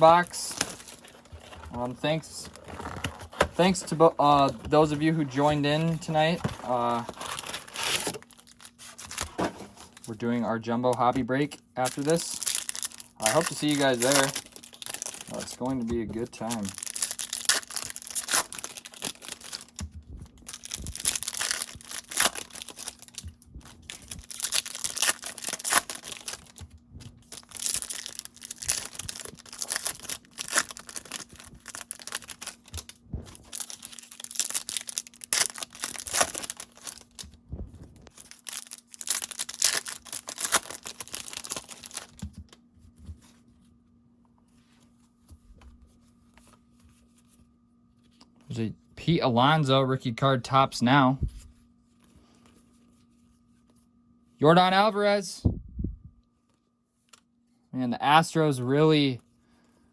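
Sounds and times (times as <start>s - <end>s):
plastic and foil wrapping tearing: 6.0s - 10.1s, 11.8s - 26.6s, 27.2s - 37.2s, 38.1s - 42.2s.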